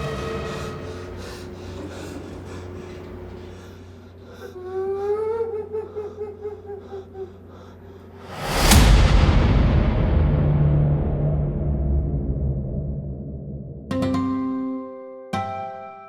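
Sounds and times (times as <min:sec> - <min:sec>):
horror sting boom: 0:00.0 - 0:02.6, 0:08.2 - 0:13.9
high-pitched eerie laugh: 0:00.0 - 0:03.3
dark music drone: 0:00.0 - 0:05.5, 0:08.3 - 0:13.9.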